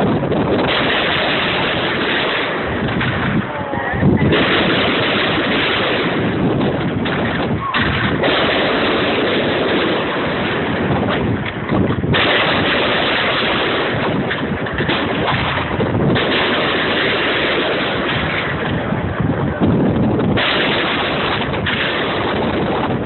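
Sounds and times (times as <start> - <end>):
fireworks bangs and crackle: 0.0 - 23.0.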